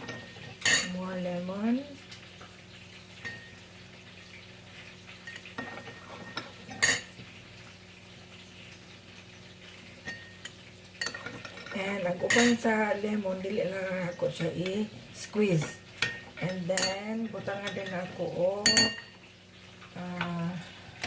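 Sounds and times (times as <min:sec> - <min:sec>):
faint steady hum: 0:00.0 - 0:21.0
spoon clinking against bowl: 0:16.0 - 0:17.0, 0:17.6 - 0:19.1.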